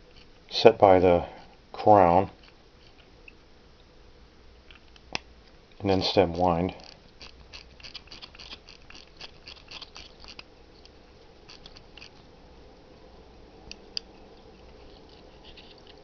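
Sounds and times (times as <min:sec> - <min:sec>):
pocket watch ratchet clicks: 0:06.8 - 0:10.5.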